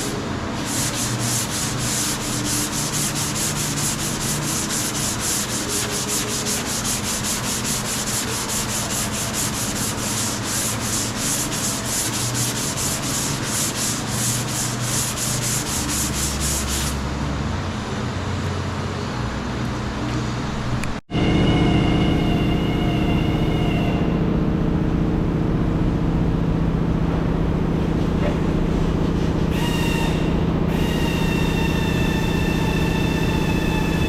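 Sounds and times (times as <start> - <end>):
sanding rasp: 0.0 - 17.0.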